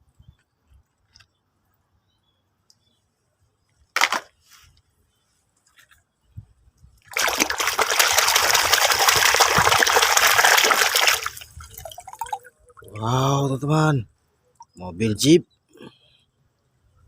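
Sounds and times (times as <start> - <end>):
water running over plastic toy: 7.1 - 12.5
water splash: 7.1 - 13.2.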